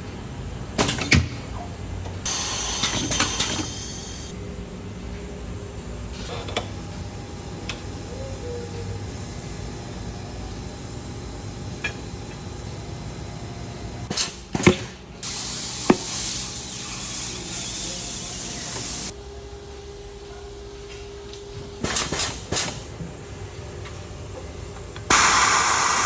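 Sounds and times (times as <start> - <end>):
compressed air hissing: 2.3 - 4.3, 15.2 - 19.1, 25.1 - 26.0.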